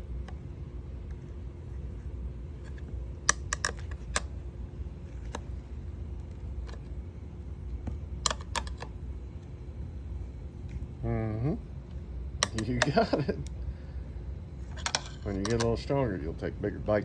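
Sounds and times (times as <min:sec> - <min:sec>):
tyre spoons clicking on rim: 0:12.4 - 0:13.0.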